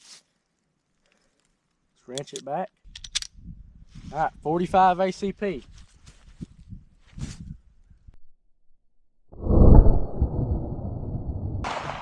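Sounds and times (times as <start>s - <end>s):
gunshot boom rumbling: 9.4s - 12.0s.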